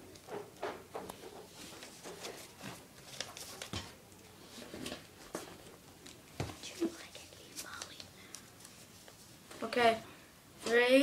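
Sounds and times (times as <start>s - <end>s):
paper rustling and clicks: 0.1s - 4.0s.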